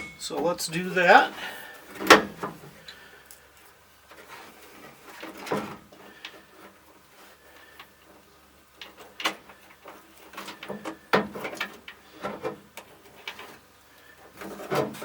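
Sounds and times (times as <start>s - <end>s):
clicks and rattles of parts: 7.5s - 15.0s.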